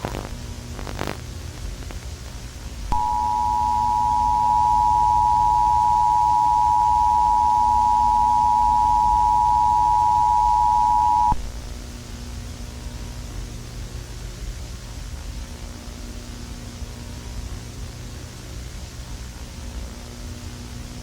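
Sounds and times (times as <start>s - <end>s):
low background hum: 0.0s - 21.0s
two-tone alert signal: 2.9s - 11.4s.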